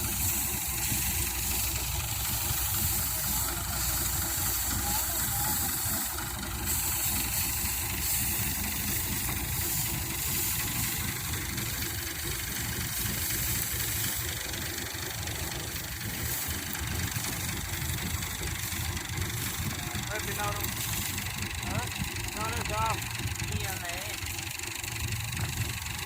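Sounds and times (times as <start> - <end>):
reaper engine running: 0.0 - 26.0.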